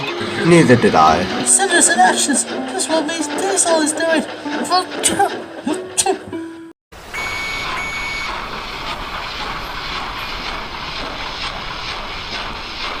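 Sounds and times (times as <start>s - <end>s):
steam locomotive chuffing: 0.0s - 13.0s
steady hiss of steam: 7.1s - 13.0s.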